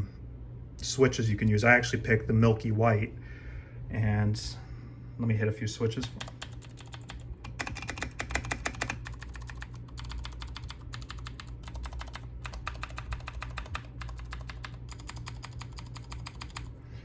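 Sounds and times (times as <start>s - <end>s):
mechanical keyboard typing: 6.0s - 16.7s.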